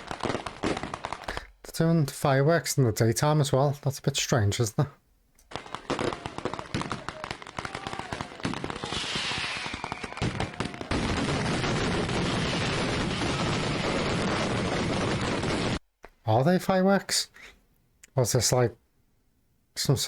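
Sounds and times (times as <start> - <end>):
fireworks cracking and banging: 0.0 - 1.6, 5.5 - 15.8.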